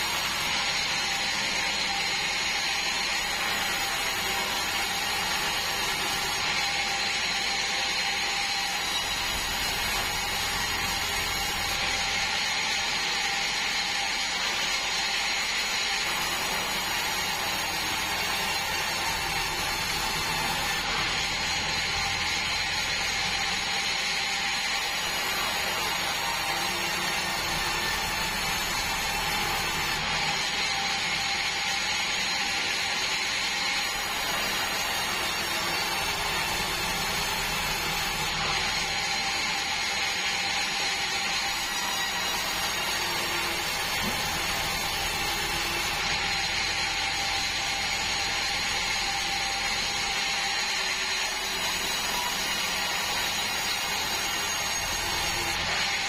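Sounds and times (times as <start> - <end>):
band saw machine running: 0.0 - 56.0.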